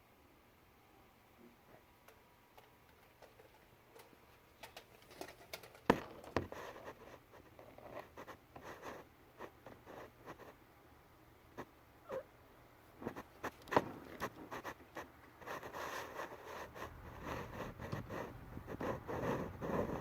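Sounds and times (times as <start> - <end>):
kittens tapping and scuffling: 2.0 - 9.1, 13.0 - 20.0.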